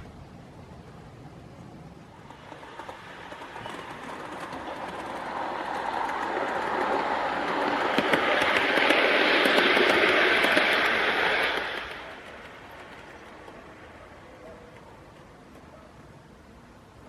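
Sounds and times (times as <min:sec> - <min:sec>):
model train wheels on rails: 0:00.9 - 0:17.0
sharp rail clicks: 0:02.2 - 0:15.8.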